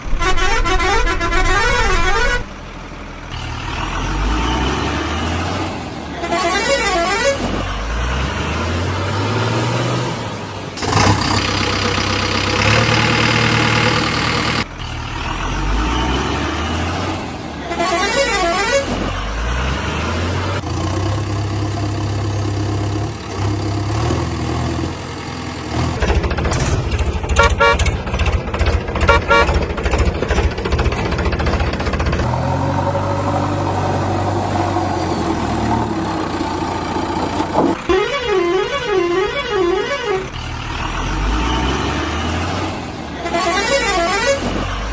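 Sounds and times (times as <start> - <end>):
long dense horn blast: 0.0 - 2.5
warbling musical horn: 0.0 - 2.5, 37.8 - 40.4
diesel engines revving: 0.0 - 44.9.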